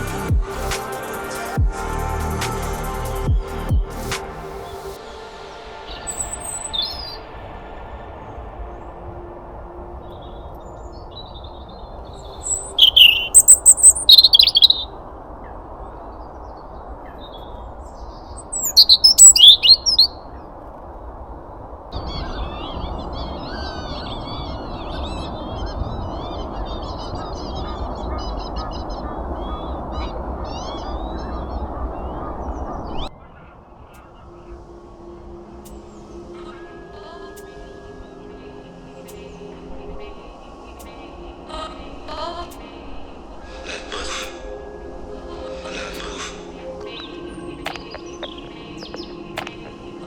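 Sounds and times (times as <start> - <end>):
small birds twittering: 5.9 - 9.2, 9.9 - 50.0
sharp repeated high bird calls: 6.0 - 7.2, 12.2 - 14.9, 18.4 - 20.2, 45.6 - 49.8.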